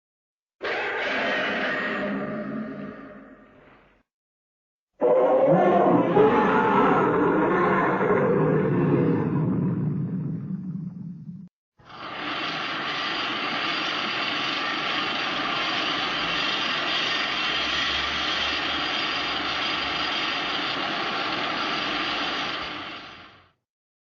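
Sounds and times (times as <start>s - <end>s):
loud steady rushing noise: 11.9s - 23.5s.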